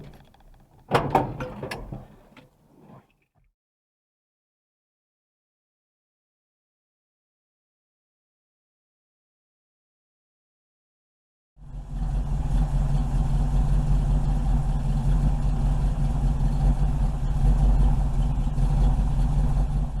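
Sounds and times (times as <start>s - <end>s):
truck engine running steadily: 0.0s - 2.5s, 11.6s - 20.0s.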